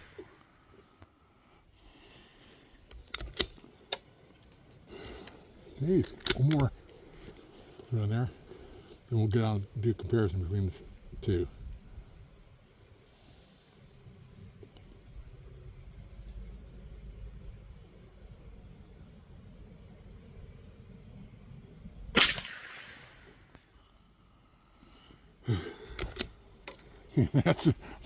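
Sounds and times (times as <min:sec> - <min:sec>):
insects chirring: 0:00.0 - 0:28.0
rifle shot: 0:22.2 - 0:23.6.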